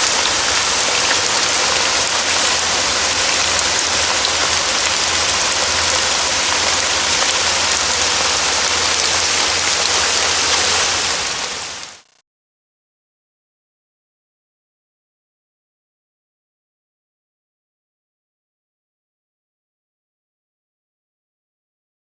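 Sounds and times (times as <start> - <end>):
heavy rain in a forest: 0.0 - 12.1.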